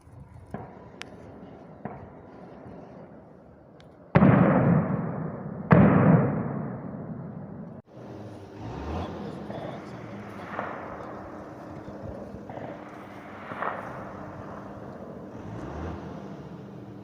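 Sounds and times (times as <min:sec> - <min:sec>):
gunshots with echo: 0:04.0 - 0:07.9, 0:08.8 - 0:17.0.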